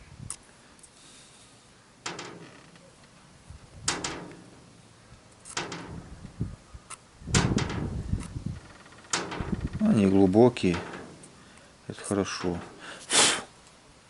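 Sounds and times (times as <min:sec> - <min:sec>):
sharp clicks and knocks: 0:02.0 - 0:03.2, 0:03.8 - 0:12.8
rough rubbing: 0:07.4 - 0:13.3.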